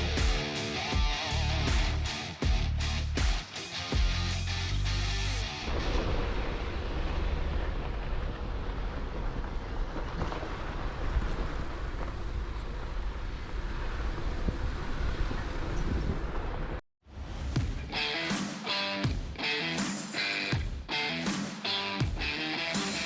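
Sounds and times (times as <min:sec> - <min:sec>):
low vehicle rumble: 0:04.5 - 0:16.8
wind noise on microphone: 0:05.7 - 0:16.8.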